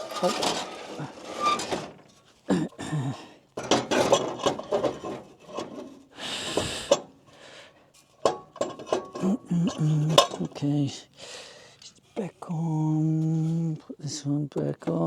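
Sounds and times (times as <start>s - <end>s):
scraping and rubbing on parts: 0.0s - 2.5s, 3.6s - 7.1s, 7.9s - 10.6s.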